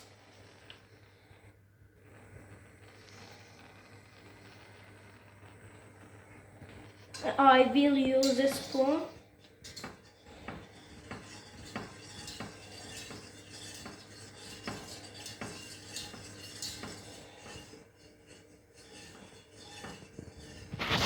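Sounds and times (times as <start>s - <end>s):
spoon scraping a pan: 6.9s - 21.0s.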